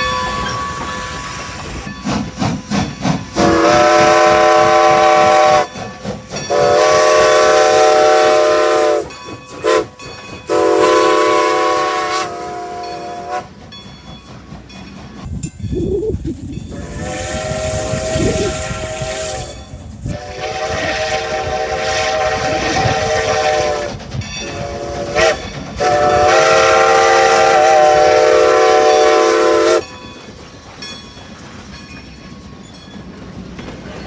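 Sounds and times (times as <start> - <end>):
steam locomotive whistle: 0.0 - 13.6, 16.7 - 30.0
locomotive exhaust chuffs: 0.0 - 34.0
steam hissing: 0.0 - 34.0.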